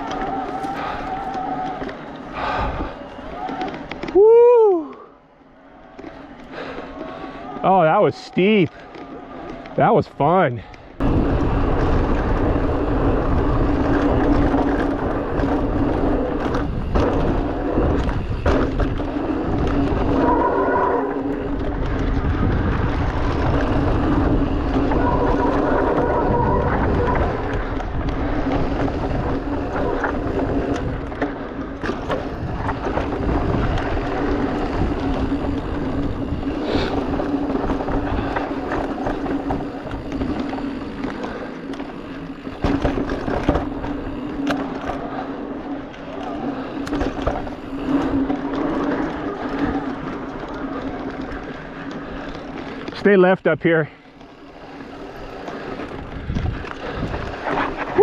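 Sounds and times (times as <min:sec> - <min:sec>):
tyres rattling over loose ground: 0:05.6 - 0:58.0
bike knocking on bumps: 0:11.0 - 0:20.2, 0:21.2 - 0:53.0
wind on microphone: 0:11.0 - 0:40.5, 0:54.9 - 0:58.0.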